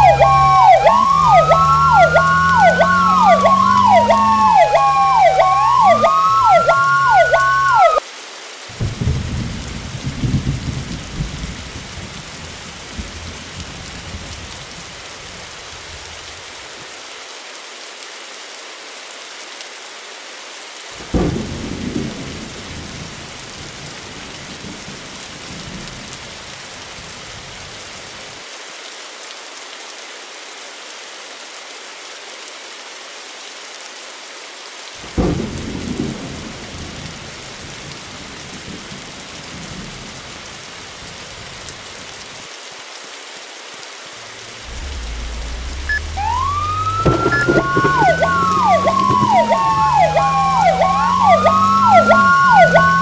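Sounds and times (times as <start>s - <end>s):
fire engine siren wailing: 0.0s - 8.0s, 35.0s - 37.2s, 44.2s - 53.0s
horn sounding: 0.0s - 8.0s, 44.2s - 53.0s
thunder rolling: 0.0s - 8.0s, 8.8s - 13.4s, 21.0s - 25.0s, 35.0s - 40.1s, 44.2s - 53.0s
steady rain: 0.0s - 53.0s.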